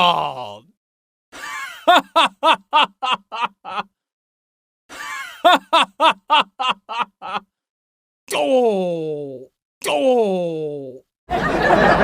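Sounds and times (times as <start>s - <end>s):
person laughing: 1.4s - 3.9s, 4.9s - 7.5s.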